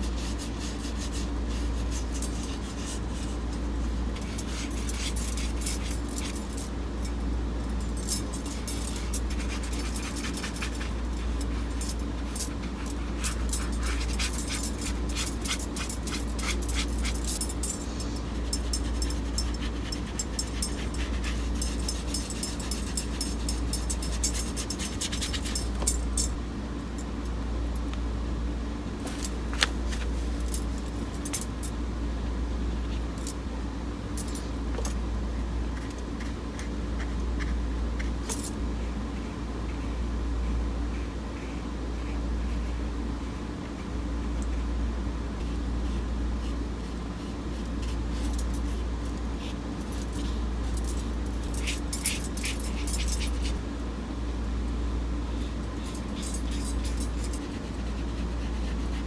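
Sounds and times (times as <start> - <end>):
brush scratching on paper: 0.0 - 6.4, 8.3 - 25.8, 57.2 - 59.0
steady low hum: 0.0 - 59.0.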